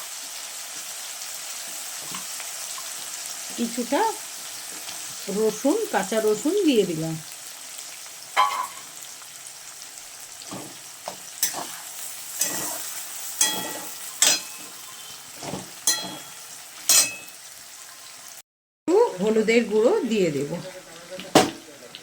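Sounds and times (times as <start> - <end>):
onions sizzling in oil: 0.0 - 22.0
utensil scraping pan: 10.5 - 17.3.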